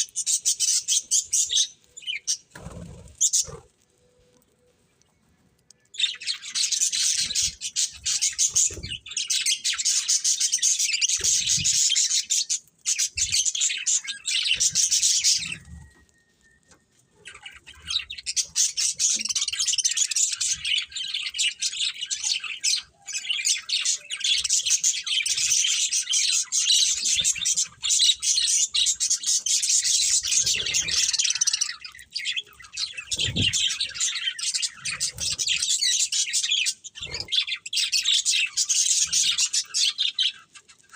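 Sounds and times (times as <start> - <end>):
budgerigars chattering and warbling: 6.0 - 15.8, 17.3 - 40.9.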